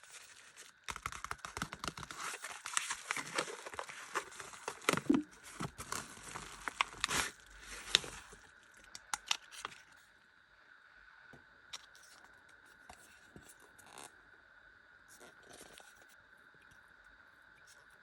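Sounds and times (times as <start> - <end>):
packaging crinkling and tearing: 0.0 - 9.8.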